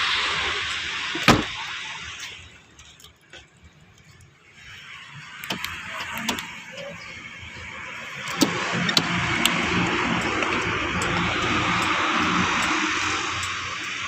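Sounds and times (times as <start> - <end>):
car engine running: 5.5 - 14.0
sharp clicks: 8.2 - 14.0.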